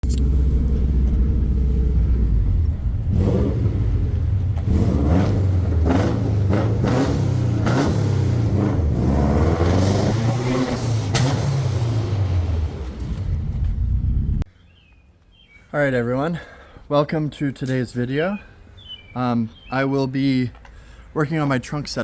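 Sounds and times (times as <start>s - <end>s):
car engine revving: 0.0s - 14.4s
sharp cracks: 10.4s - 11.9s.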